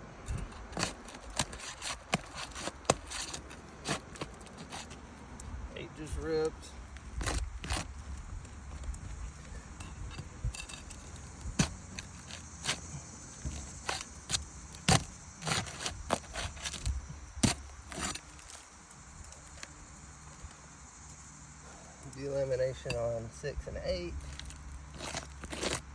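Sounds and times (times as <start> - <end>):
roof shingles tearing and crackling: 0.3 - 5.5, 6.8 - 20.6, 24.1 - 25.9.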